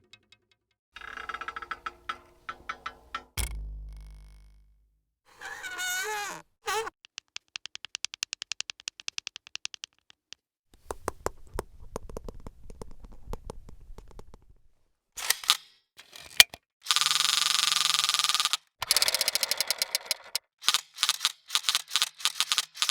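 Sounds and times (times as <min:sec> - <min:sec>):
low rumble: 0:03.4 - 0:05.0
clatter of clicks: 0:18.4 - 0:22.9.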